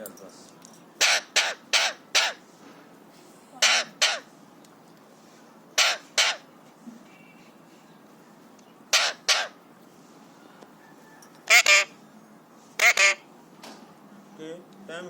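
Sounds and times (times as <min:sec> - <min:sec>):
parakeet screaming: 0:01.0 - 0:02.4, 0:03.6 - 0:04.3, 0:05.8 - 0:06.5, 0:08.9 - 0:09.6, 0:11.5 - 0:12.0, 0:12.8 - 0:13.2.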